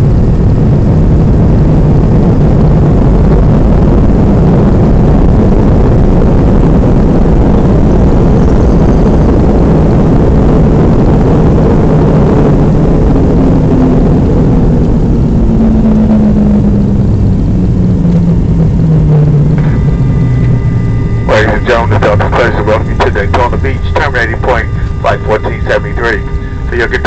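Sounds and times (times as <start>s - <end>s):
jet engine cabin roar: 0.0s - 27.0s
rushing air: 0.0s - 27.0s
engine tone falling in pitch: 7.4s - 27.0s.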